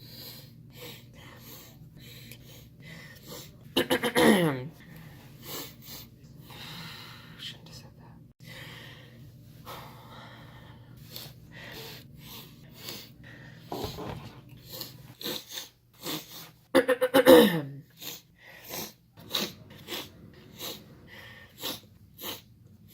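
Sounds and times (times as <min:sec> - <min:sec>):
voiced snort: 0:18.0 - 0:22.5.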